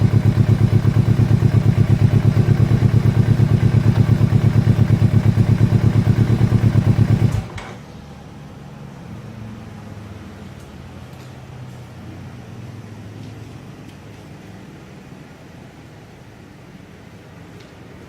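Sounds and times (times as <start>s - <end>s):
motorcycle engine idling: 0.0s - 7.6s.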